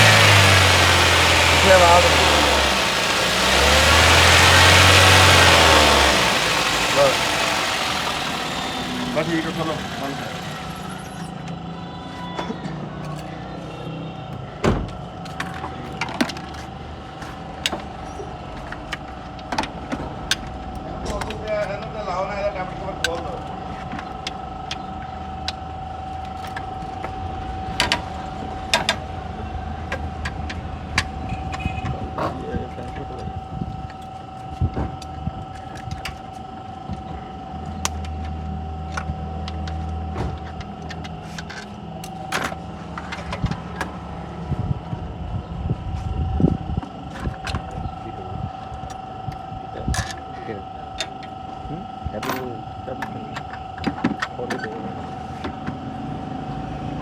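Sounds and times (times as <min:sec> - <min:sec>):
car engine running: 0:00.0 - 0:11.3.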